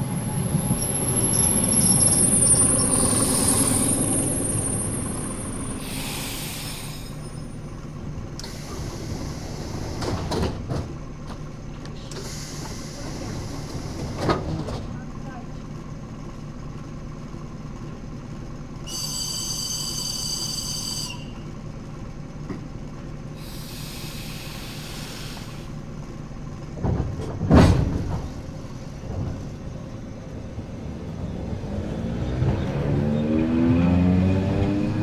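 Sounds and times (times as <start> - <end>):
train rising whine: 0.0 - 11.4, 16.0 - 26.7, 27.9 - 35.0
train low rumble: 0.0 - 35.0
air hiss: 5.6 - 7.6, 12.2 - 13.9, 23.4 - 25.8.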